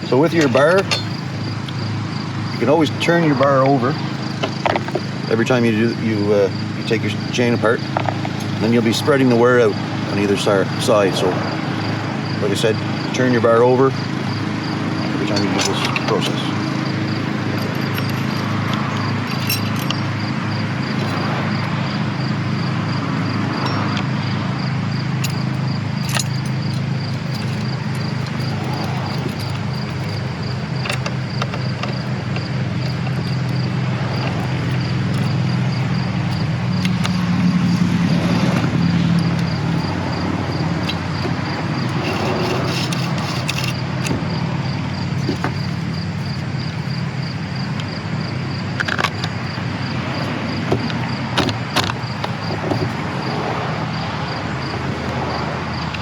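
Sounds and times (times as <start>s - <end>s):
chainsaw parts clicking and scraping: 0.0s - 1.9s, 2.6s - 5.6s, 14.6s - 21.9s, 25.1s - 44.4s, 45.0s - 56.0s.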